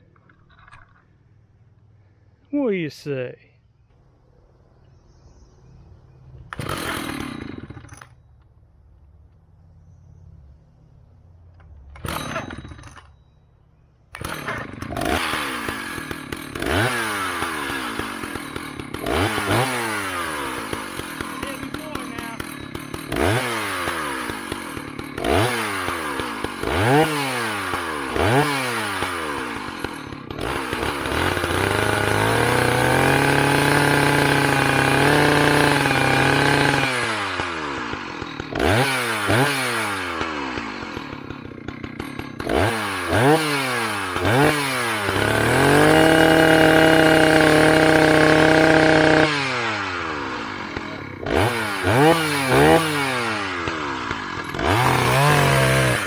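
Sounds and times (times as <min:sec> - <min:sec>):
chainsaw revving: 0:06.4 - 0:08.2, 0:11.9 - 0:13.1, 0:14.1 - 0:56.0.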